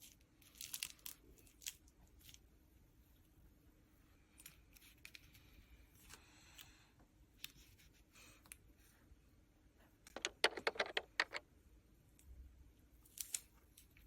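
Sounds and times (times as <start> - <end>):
small hard objects clicking: 10.1 - 11.4.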